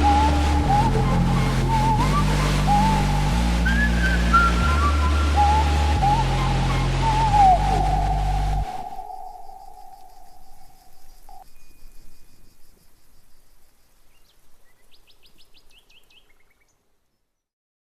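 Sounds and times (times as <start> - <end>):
faint pulsing insect trill: 8.6 - 16.7.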